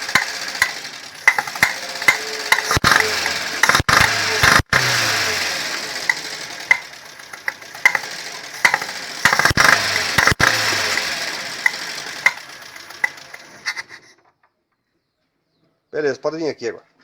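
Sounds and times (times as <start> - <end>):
car engine running and revving: 0.0 - 13.4
sharp irregular engine ticking: 0.0 - 14.1.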